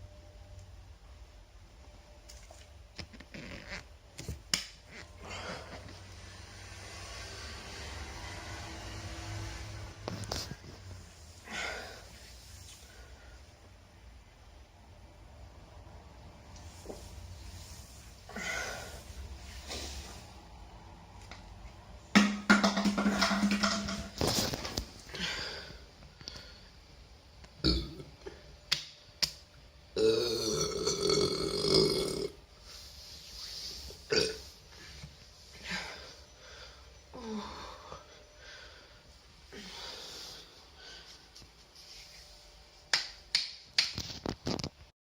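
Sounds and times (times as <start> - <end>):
person burping: 27.6 - 28.4, 30.0 - 32.4, 34.1 - 34.5.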